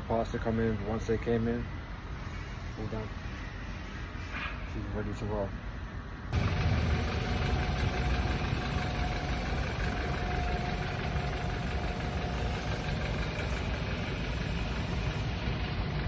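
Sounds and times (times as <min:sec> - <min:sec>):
car engine running: 0:06.4 - 0:16.0.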